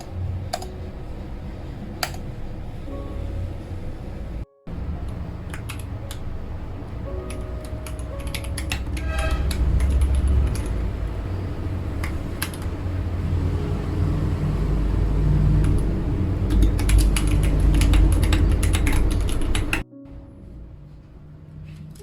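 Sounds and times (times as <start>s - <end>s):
steady low rumble: 0.0s - 22.0s
mechanical keyboard typing: 2.0s - 2.3s, 5.0s - 6.3s, 7.3s - 10.8s, 12.0s - 12.8s, 15.6s - 19.8s.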